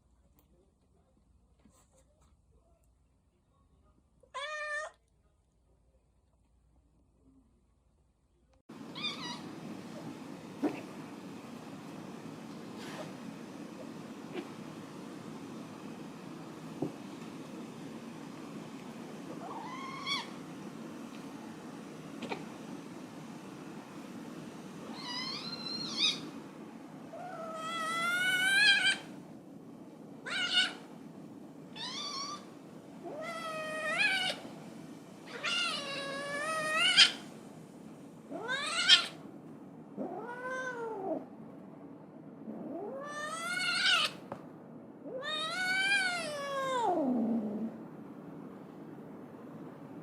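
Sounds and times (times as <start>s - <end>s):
cat meowing: 4.3s - 5.0s, 8.9s - 9.5s, 19.4s - 20.4s, 24.9s - 26.3s, 30.2s - 30.8s, 31.7s - 34.4s, 35.3s - 37.3s, 38.3s - 39.2s, 40.0s - 41.2s, 42.6s - 44.2s, 45.1s - 47.3s.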